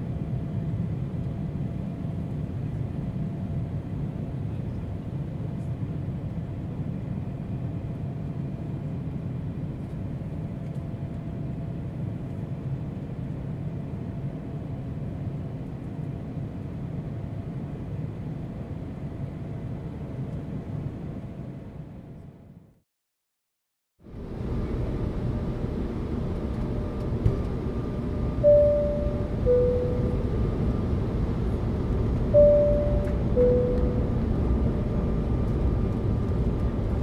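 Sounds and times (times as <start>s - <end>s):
airliner engine rumble in cabin: 0.0s - 22.6s, 24.1s - 37.0s
faint steady whine: 24.1s - 37.0s.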